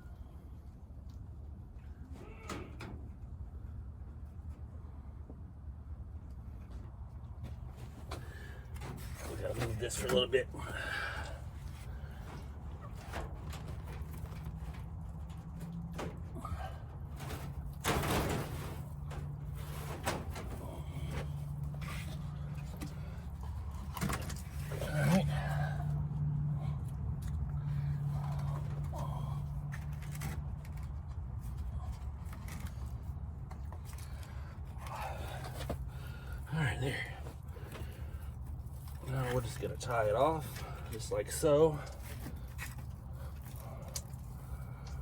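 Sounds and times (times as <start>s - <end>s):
low steady rumble: 3.0s - 45.0s
loud scraping rattle: 12.0s - 23.2s
small clicks scrapes and rustles: 26.2s - 36.4s.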